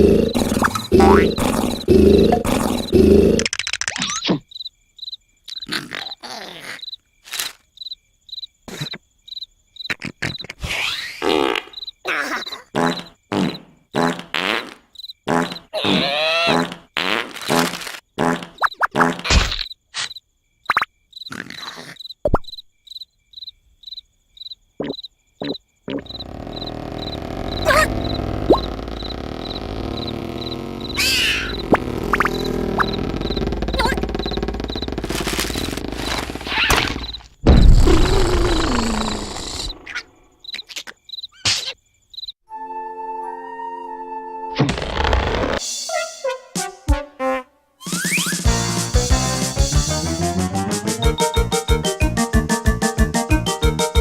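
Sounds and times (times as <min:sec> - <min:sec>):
cartoon snoring: 0:00.0 - 0:03.5, 0:05.6 - 0:06.8, 0:15.3 - 0:16.9, 0:21.3 - 0:22.0, 0:25.4 - 0:36.7, 0:37.7 - 0:39.8
crickets chirping: 0:00.0 - 0:10.5, 0:11.2 - 0:14.2, 0:14.8 - 0:15.8, 0:19.6 - 0:42.4
cartoon sound effects: 0:00.4 - 0:02.5, 0:15.5 - 0:16.8, 0:25.4 - 0:34.2, 0:47.2 - 0:51.6
short rustling sound effects: 0:34.7 - 0:37.4.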